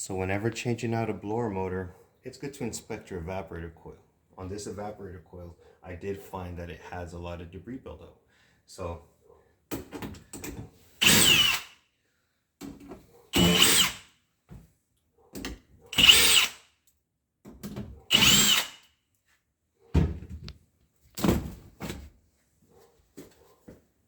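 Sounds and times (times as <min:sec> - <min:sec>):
power drill motor whine: 0:11.0 - 0:11.8, 0:13.3 - 0:14.1, 0:15.9 - 0:16.7, 0:18.1 - 0:18.9.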